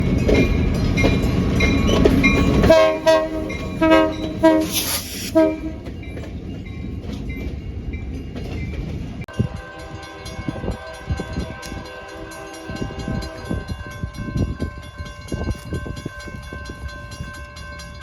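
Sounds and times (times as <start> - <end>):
freight train rumbling: 0.0 - 18.0
locomotive air horn blasts: 2.6 - 5.8, 9.3 - 15.0.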